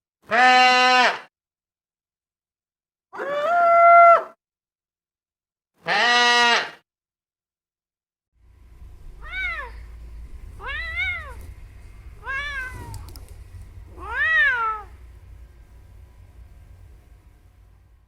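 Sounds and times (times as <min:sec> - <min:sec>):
cat meowing: 0:03.1 - 0:04.4, 0:09.2 - 0:09.9, 0:10.6 - 0:11.4, 0:12.2 - 0:13.2, 0:13.9 - 0:15.0
low rumble: 0:08.4 - 0:18.0.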